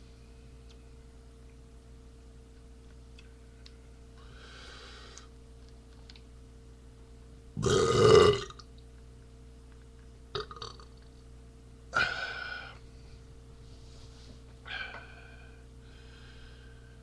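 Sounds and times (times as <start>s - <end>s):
man burping loudly: 7.6s - 8.6s, 10.4s - 10.8s.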